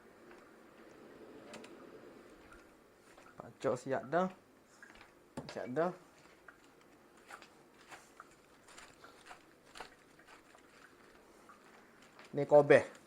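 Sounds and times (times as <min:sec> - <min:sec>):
vegetables being handled: 0:06.1 - 0:13.0.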